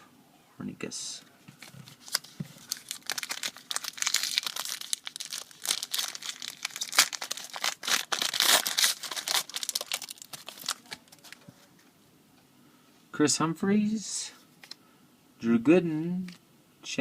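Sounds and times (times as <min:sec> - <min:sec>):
foil wrapper crackling: 0:02.0 - 0:11.4.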